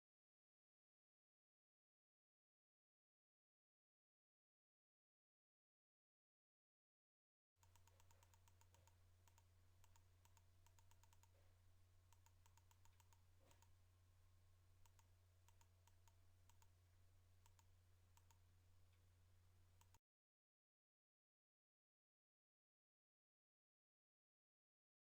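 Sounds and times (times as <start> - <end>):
faint quick clicks: 7.6 - 11.4, 12.1 - 13.8, 14.8 - 16.8, 17.4 - 19.0, 19.8 - 20.0
low electrical hum: 7.6 - 20.0.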